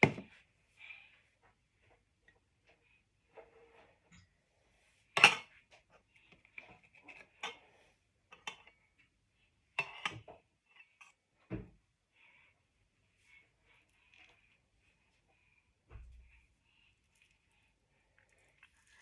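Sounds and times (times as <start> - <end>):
kitchenware clinks and knocks: 0.0 - 0.3.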